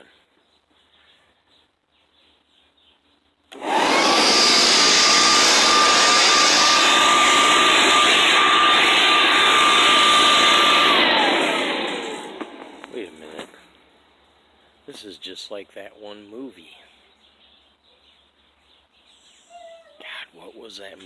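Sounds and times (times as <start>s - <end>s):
leaf blower whine: 3.5s - 13.6s.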